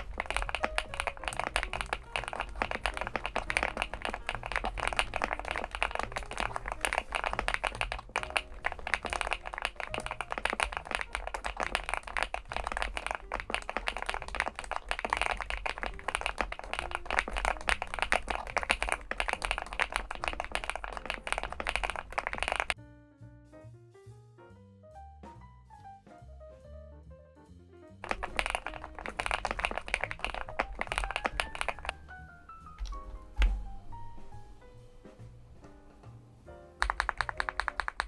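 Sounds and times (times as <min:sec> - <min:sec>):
mechanical keyboard typing: 0:00.0 - 0:22.8, 0:28.0 - 0:32.1, 0:36.8 - 0:38.0.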